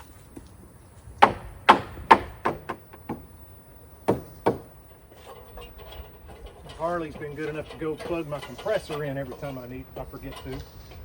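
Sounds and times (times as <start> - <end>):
hammer striking wood: 1.2 - 3.3, 4.0 - 4.8.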